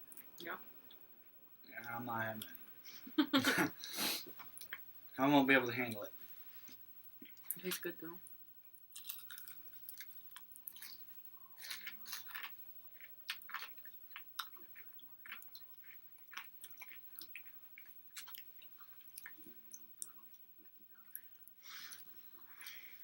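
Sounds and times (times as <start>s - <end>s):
close-up chewing food: 8.7s - 23.0s.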